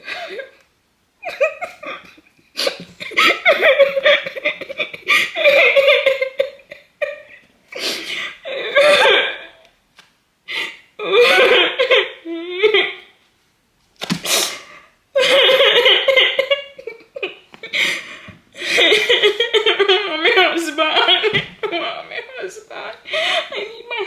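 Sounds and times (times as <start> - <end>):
woman laughing: 1.2 - 7.4, 15.2 - 17.9, 18.6 - 24.0
woman gasping: 7.8 - 8.5, 23.0 - 23.9.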